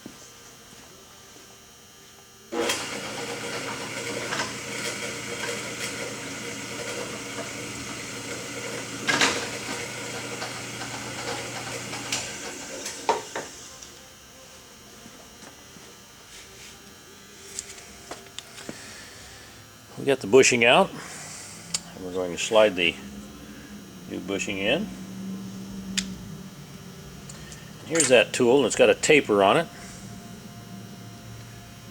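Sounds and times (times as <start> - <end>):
drill press motor running: 2.5 - 14.0.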